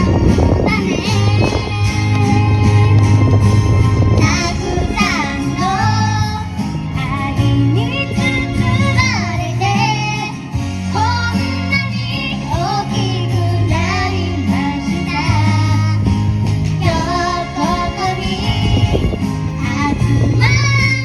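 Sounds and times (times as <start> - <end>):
girl singing pop song: 0.0 - 21.0
instrumental accompaniment with bass: 0.0 - 21.0.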